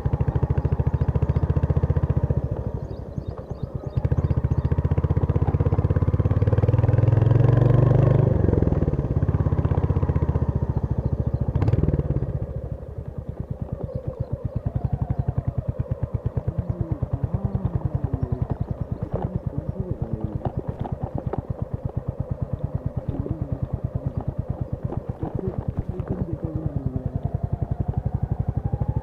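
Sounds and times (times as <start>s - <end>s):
motorcycle engine thumping: 11.2s - 28.2s.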